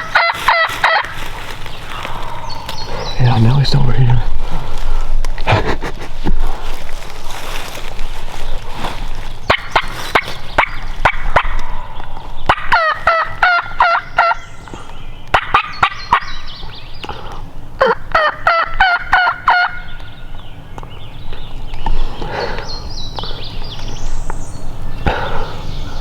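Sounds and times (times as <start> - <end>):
turkey yelping: 0.0 - 1.2, 9.4 - 11.8, 12.5 - 14.4, 15.3 - 16.6, 17.8 - 20.2.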